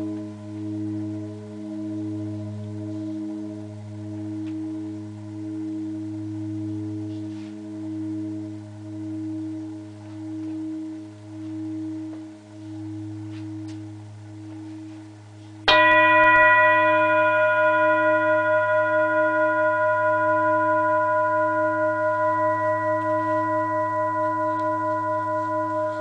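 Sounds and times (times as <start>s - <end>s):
singing bowl humming: 0.0s - 26.0s
singing bowl struck: 15.6s - 26.0s.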